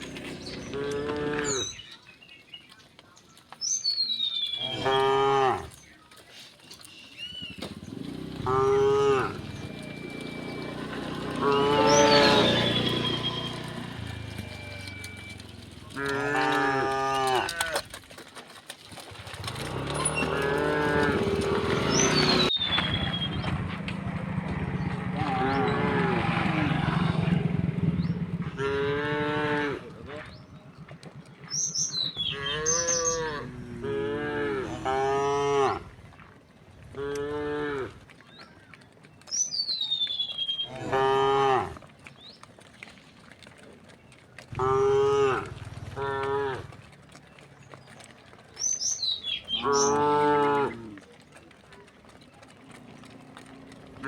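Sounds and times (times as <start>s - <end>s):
cows mooing: 0.0s - 1.8s, 4.5s - 5.8s, 7.6s - 18.0s, 19.2s - 23.3s, 24.4s - 30.4s, 32.0s - 36.0s, 36.9s - 38.1s, 40.5s - 41.9s, 44.5s - 47.2s, 49.0s - 51.1s.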